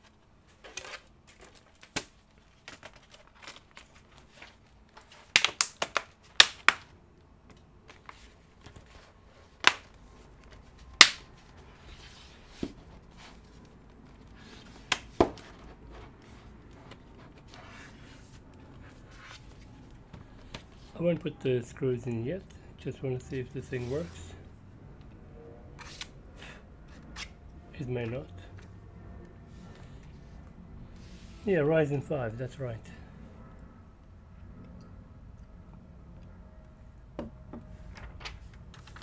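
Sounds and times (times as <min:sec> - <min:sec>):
plastic laptop casing clicks and snaps: 0:05.3 - 0:06.9.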